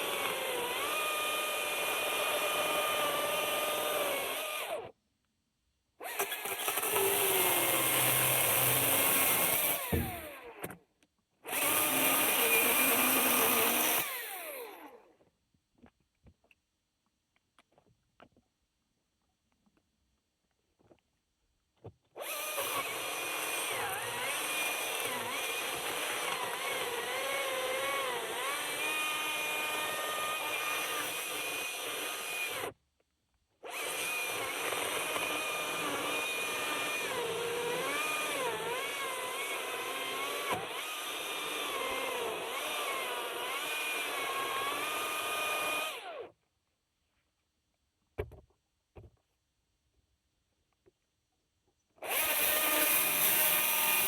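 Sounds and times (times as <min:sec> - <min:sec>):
battery chainsaw motor whine: 0:06.1 - 0:10.6.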